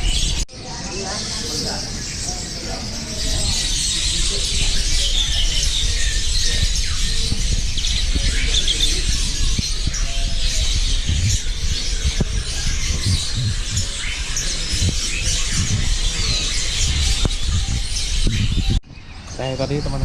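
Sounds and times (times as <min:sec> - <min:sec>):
birds chirping and squawking: 0:00.0 - 0:20.0
low rumble: 0:03.3 - 0:18.8.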